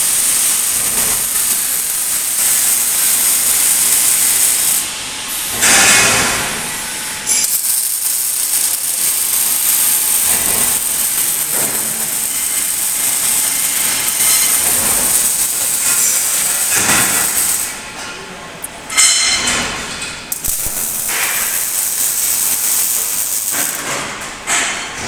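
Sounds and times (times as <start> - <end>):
welding arc hissing: 0.0 - 18.0, 20.3 - 24.4.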